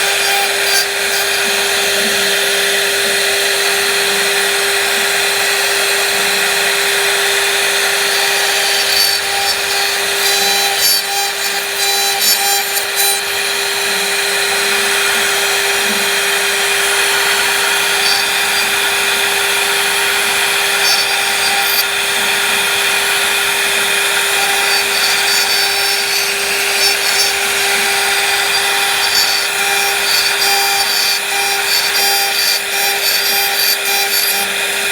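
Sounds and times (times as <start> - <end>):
cnc router spindle whining: 0.0 - 34.9
clicking and crackle of cutting wood: 7.8 - 13.6, 16.9 - 34.9.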